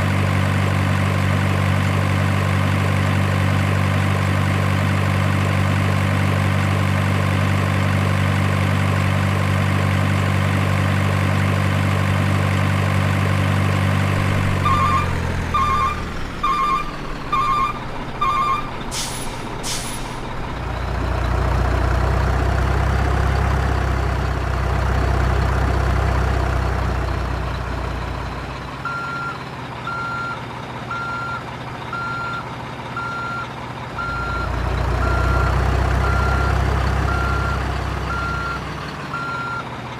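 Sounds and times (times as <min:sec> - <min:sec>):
diesel engine sound: 0:00.0 - 0:39.9
reversing beeps: 0:14.6 - 0:18.7, 0:28.8 - 0:32.4, 0:33.0 - 0:39.7
air-brake hisses: 0:18.9 - 0:20.3.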